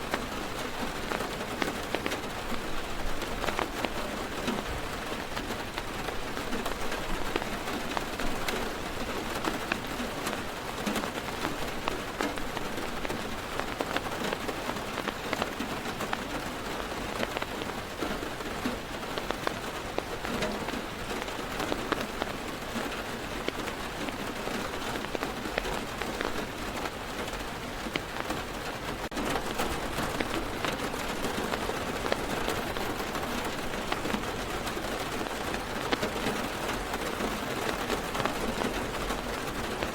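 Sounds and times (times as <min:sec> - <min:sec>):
heavy rain on car roof: 0:00.0 - 0:39.9.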